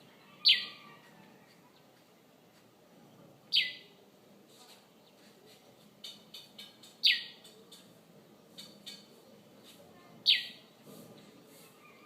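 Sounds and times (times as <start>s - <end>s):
soft bird chirps: 3.0s - 4.0s, 4.7s - 10.8s.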